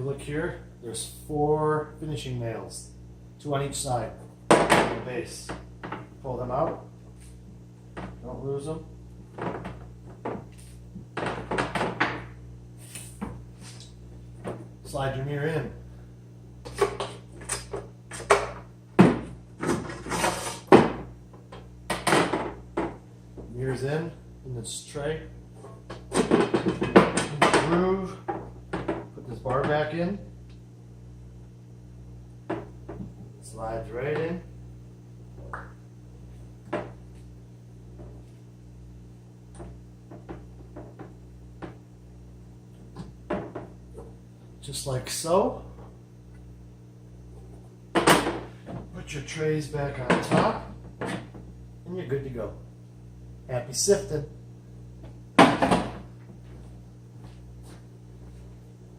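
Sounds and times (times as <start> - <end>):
mirror knocking and scraping: 16.6 - 21.1.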